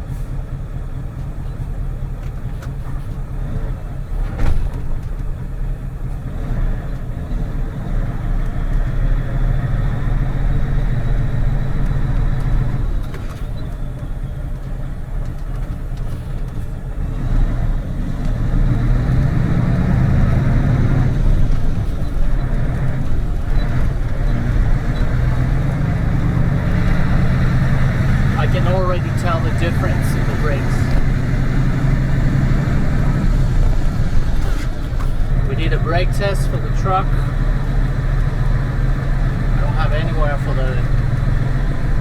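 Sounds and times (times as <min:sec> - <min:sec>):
truck diesel engine running: 0:00.0 - 0:42.0.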